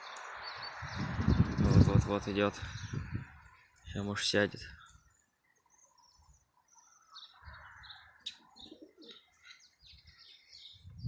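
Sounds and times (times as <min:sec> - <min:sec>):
faint bird chirps: 0:04.7 - 0:11.0.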